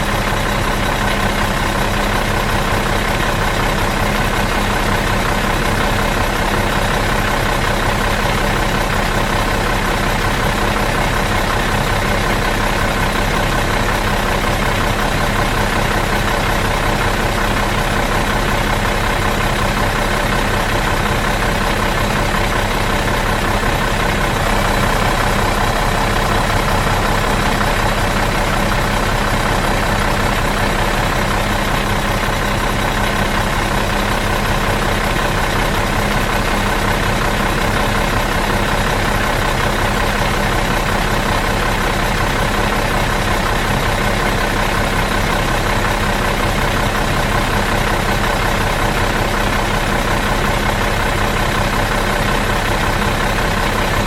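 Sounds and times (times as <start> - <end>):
bus engine idling: 0.0 - 54.0.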